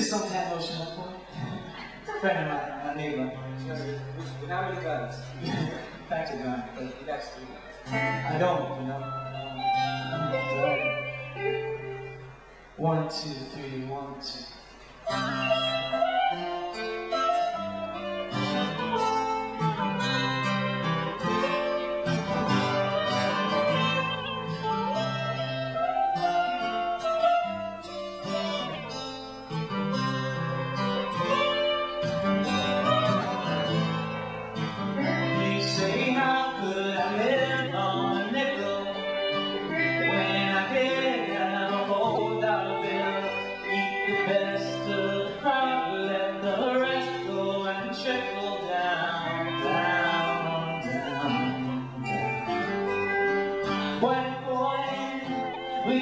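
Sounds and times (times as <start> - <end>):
acoustic folk band playing: 0.0 - 12.9, 14.6 - 56.0.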